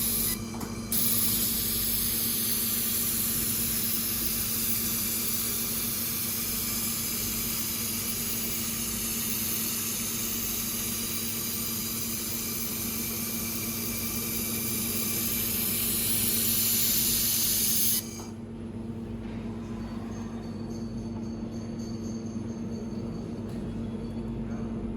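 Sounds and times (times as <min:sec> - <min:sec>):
machine hum: 0:00.0 - 0:18.4
welding machine hiss: 0:00.0 - 0:18.4.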